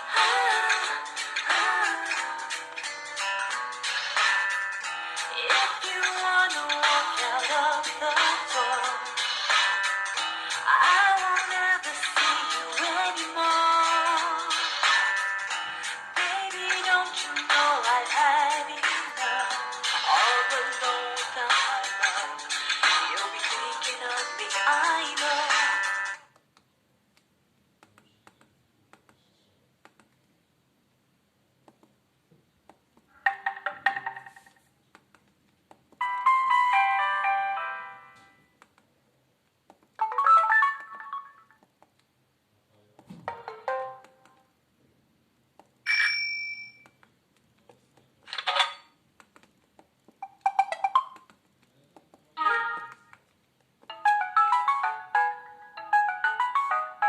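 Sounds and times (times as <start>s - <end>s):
phone alert chimes and jingles: 45.9s - 46.9s.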